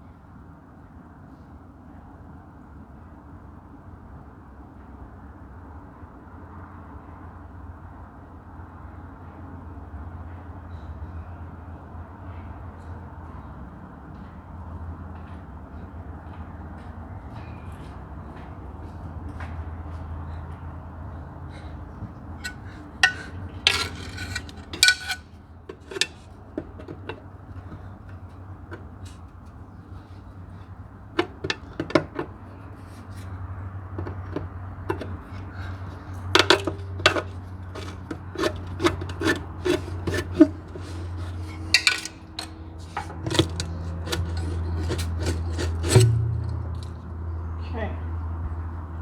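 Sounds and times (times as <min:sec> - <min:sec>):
metal tools clinking and scraping: 0:21.5 - 0:47.0
low steady hum: 0:21.5 - 0:49.0.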